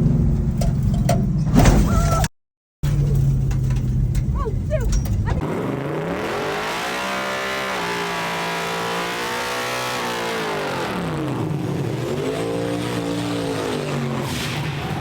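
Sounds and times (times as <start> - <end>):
vehicle engine revving: 5.1 - 15.0.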